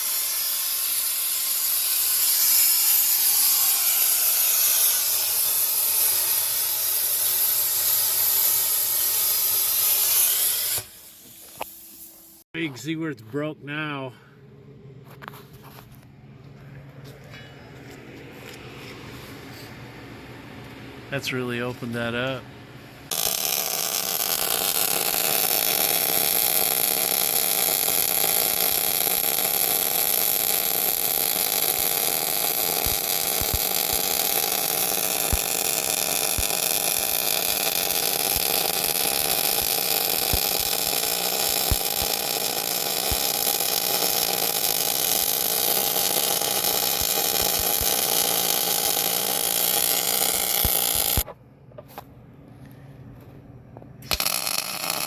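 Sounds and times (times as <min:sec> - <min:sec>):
plasma cutter hissing: 0:00.0 - 0:12.4, 0:23.1 - 0:51.2, 0:54.1 - 0:55.0.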